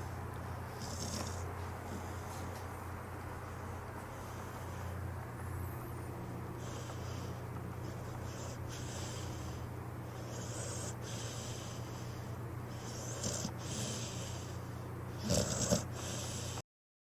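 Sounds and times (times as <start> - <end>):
dog snoring: 0.0 - 2.6, 6.6 - 16.6
dog snorting: 0.0 - 2.7, 6.6 - 16.6.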